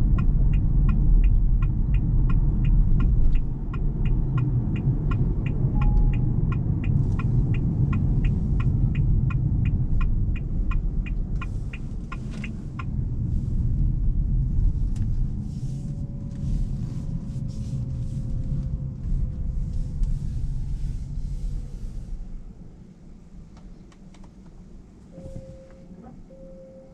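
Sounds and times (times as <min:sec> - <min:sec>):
turn signal ticking: 0:00.0 - 0:16.8
road and tyre rumble in car: 0:00.0 - 0:26.9.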